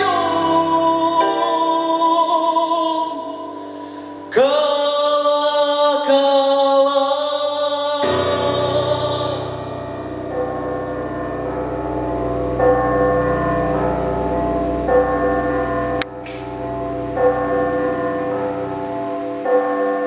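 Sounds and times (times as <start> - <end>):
man singing long notes: 0.0 - 11.2.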